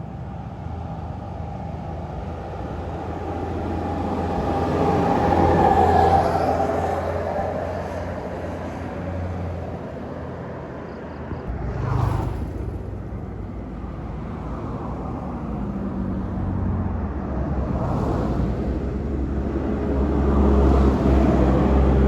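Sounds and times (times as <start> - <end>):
vehicle passing by: 11.1 - 22.0
engines running: 11.4 - 15.6.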